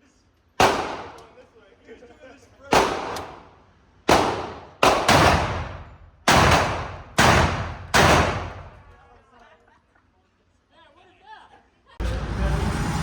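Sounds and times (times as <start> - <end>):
gunshots with echo: 0.6 - 1.2, 2.7 - 3.5, 4.1 - 8.8.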